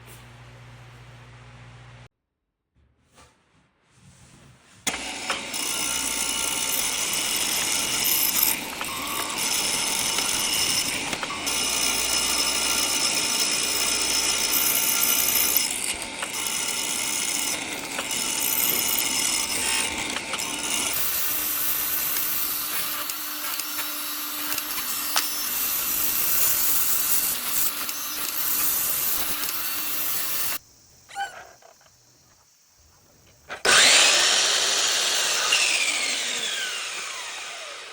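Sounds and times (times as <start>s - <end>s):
power tool cutting wood: 4.9s - 30.6s, 33.5s - 37.9s.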